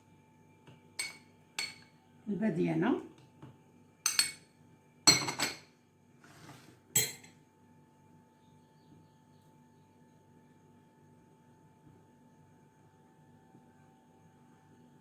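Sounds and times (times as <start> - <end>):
spoon clinking against dish: 1.0 - 1.9, 4.0 - 4.5, 5.1 - 5.7, 7.0 - 7.4.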